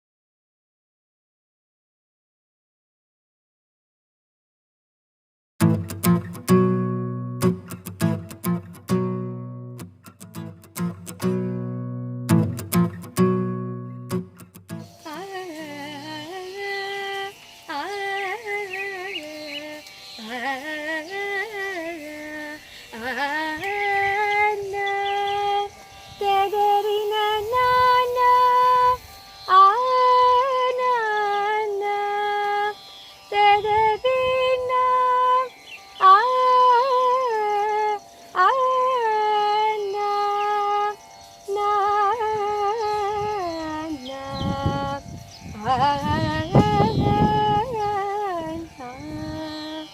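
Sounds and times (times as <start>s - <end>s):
woman singing with pitch slides: 14.9s - 49.9s.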